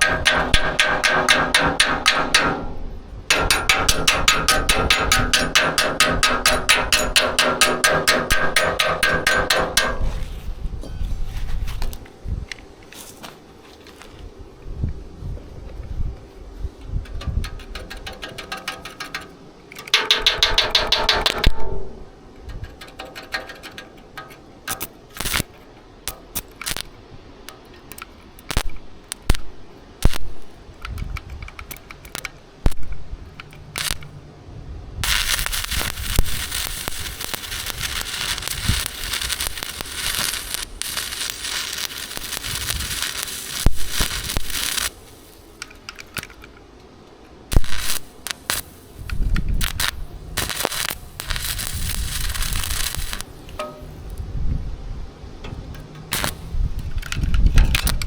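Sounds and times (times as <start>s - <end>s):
sharp clicks and knocks: 0.0s - 10.4s, 16.8s - 29.4s, 30.0s - 34.1s, 47.5s - 54.2s, 55.4s - 58.0s
welding arc crackling: 0.0s - 10.5s, 16.8s - 34.1s, 35.0s - 46.2s, 47.5s - 54.2s, 55.5s - 58.0s.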